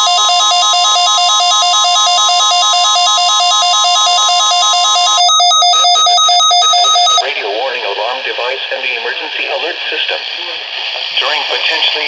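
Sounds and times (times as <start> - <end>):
fast electronic beeping: 0.0 - 7.3
warbling two-pitch alarm tone: 0.0 - 7.3.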